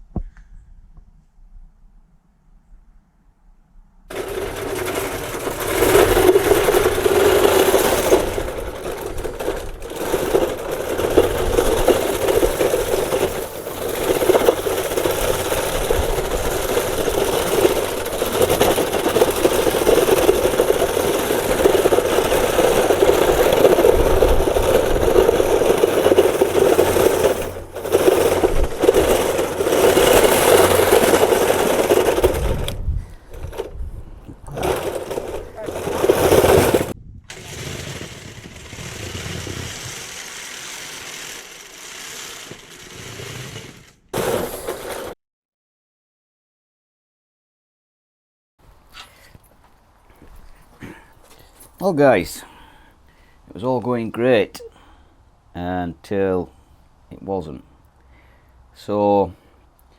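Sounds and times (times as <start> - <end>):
toy bulldozer running with hum: 4.1 - 45.2.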